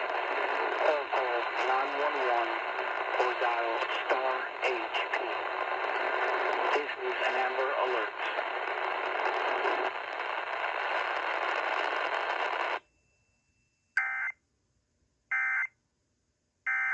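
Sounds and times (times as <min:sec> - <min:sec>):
steady radio hiss: 0:00.0 - 0:12.8.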